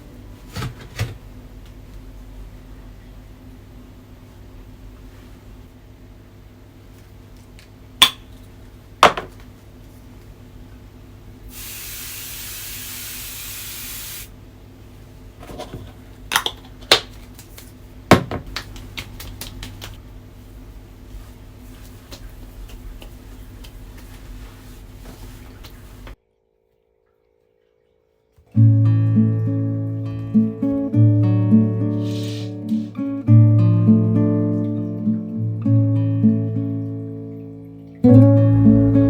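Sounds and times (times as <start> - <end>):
spray hiss: 11.5 - 14.3.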